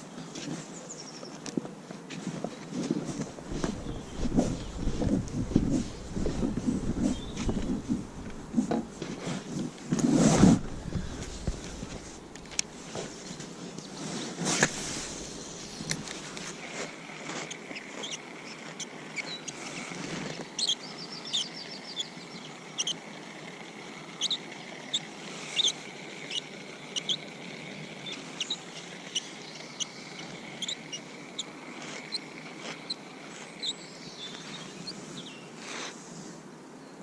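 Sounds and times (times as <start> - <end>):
faint outdoor hiss: 0.0 - 37.0
small birds chirping: 0.2 - 1.5, 2.8 - 8.4, 15.0 - 36.0
bird trill: 20.6 - 23.0.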